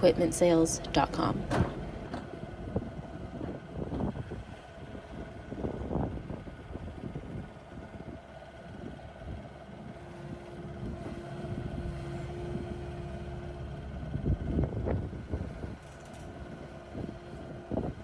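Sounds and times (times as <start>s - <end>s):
excavator diesel engine running: 0.0s - 18.0s.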